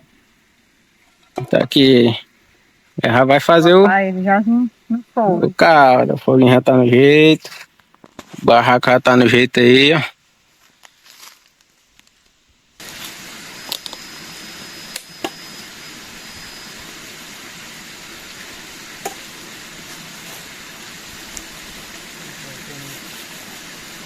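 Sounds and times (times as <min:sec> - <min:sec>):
high whistling tone: 0:13.5 - 0:17.4.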